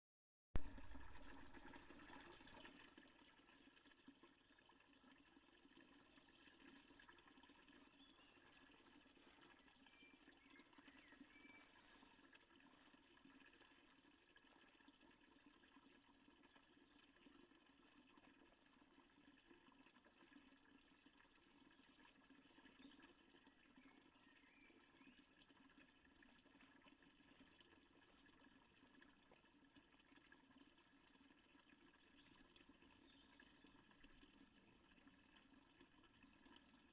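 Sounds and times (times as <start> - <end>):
fountain water splashing: 7.8 - 13.0.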